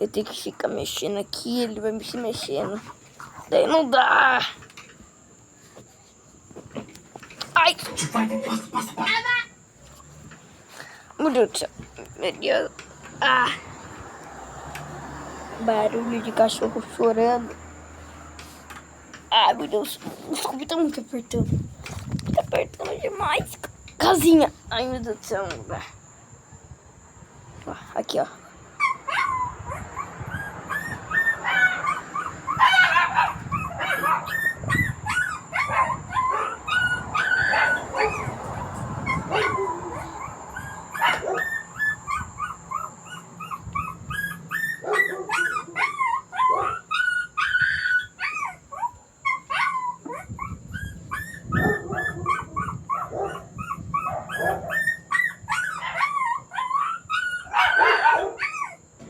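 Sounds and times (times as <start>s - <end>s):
dog whining and yelping: 28.8s - 38.4s, 39.0s - 58.9s
dog howling: 29.1s - 38.4s, 39.0s - 58.8s.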